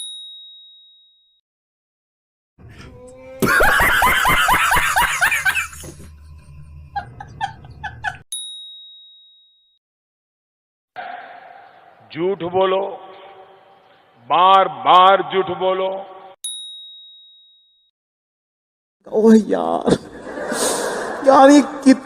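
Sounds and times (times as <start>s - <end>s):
burst of rapid laughter: 3.4s - 6.1s, 7.0s - 8.2s
bell ding: 8.3s - 9.8s, 16.4s - 17.9s.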